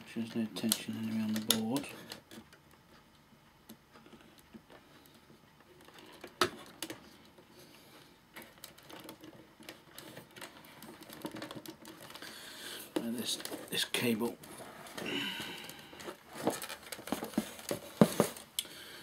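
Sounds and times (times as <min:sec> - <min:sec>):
clicks and knocks of parts: 0:00.3 - 0:03.1
rustling: 0:08.4 - 0:18.5.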